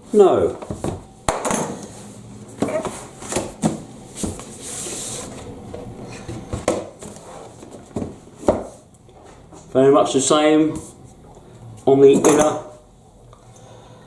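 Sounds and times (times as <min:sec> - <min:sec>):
cardboard sliding rub: 0:04.1 - 0:05.5.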